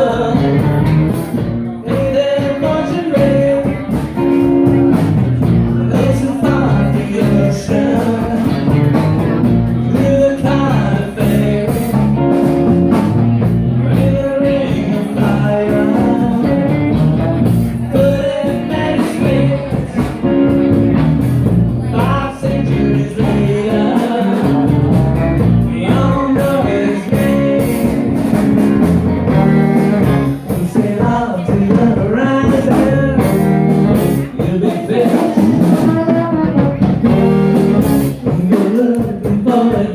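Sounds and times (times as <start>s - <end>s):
electric guitar: 0.0s - 39.9s
live rock band playing: 0.0s - 39.9s.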